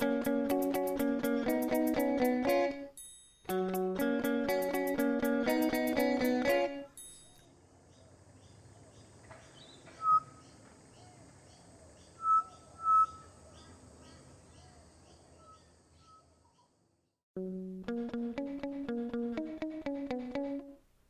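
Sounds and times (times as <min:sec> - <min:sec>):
birds chirping in background: 0:07.0 - 0:17.1
bird whistling: 0:10.0 - 0:10.4, 0:12.2 - 0:13.3.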